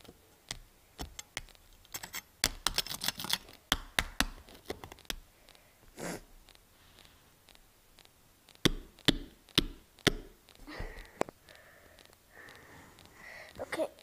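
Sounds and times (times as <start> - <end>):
small hard objects clicking: 0.0 - 5.7, 6.4 - 14.0
faint rustle: 5.3 - 8.2.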